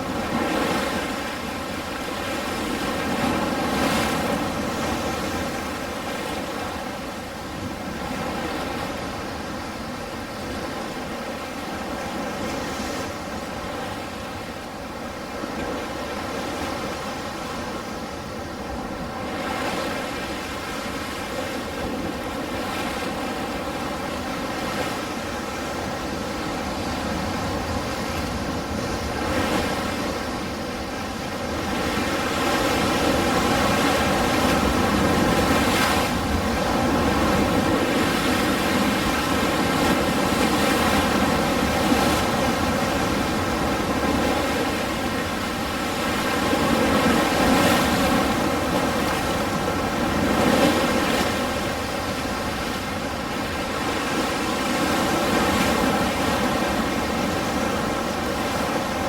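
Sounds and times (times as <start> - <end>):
ocean waves rushing: 0.0 - 59.0.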